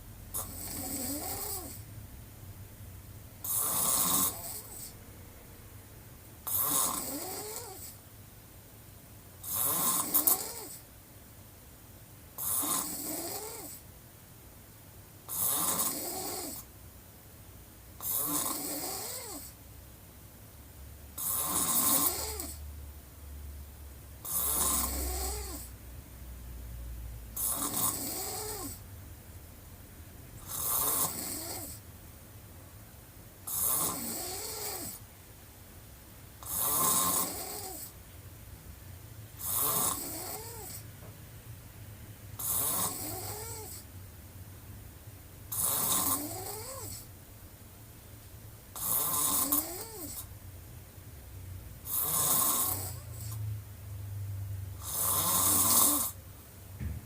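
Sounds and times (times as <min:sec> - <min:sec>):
woman snoring: 0:00.4 - 0:01.8, 0:03.4 - 0:04.9, 0:06.5 - 0:08.0, 0:09.4 - 0:10.8, 0:12.4 - 0:13.8, 0:15.3 - 0:16.7, 0:18.0 - 0:19.6, 0:21.2 - 0:22.6, 0:24.2 - 0:25.7, 0:27.4 - 0:28.8, 0:30.4 - 0:31.8, 0:33.5 - 0:35.0, 0:36.4 - 0:38.0, 0:39.4 - 0:40.8, 0:42.4 - 0:43.8, 0:45.5 - 0:47.1, 0:48.8 - 0:50.3, 0:51.8 - 0:53.4, 0:54.8 - 0:56.2.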